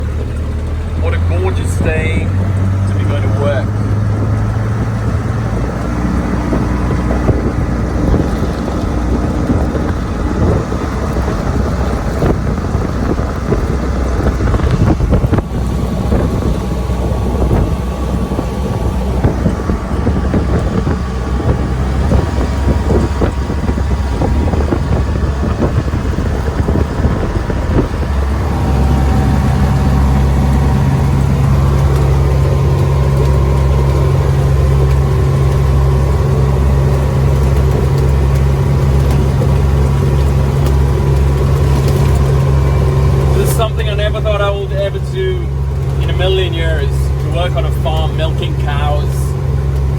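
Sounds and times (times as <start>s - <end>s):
farm vehicle engine running: 0.0s - 49.9s
rough rattling: 1.7s - 47.4s.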